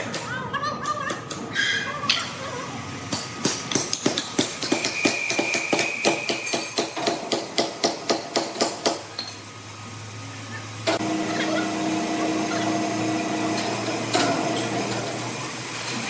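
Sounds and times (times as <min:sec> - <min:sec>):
low machine hum: 0:09.5 - 0:15.8.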